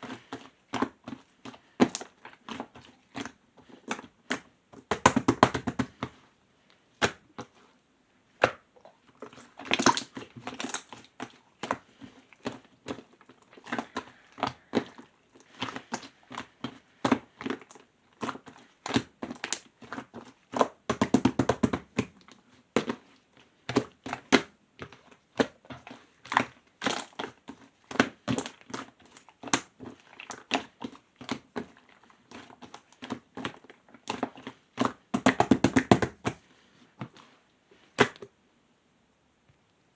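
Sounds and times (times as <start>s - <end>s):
slime squished by hand: 8.4s - 25.6s.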